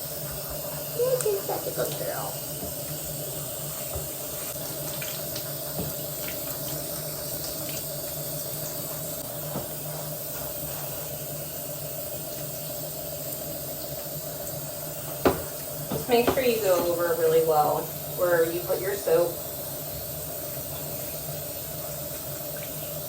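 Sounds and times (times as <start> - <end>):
tap water running: 0.0 - 23.0.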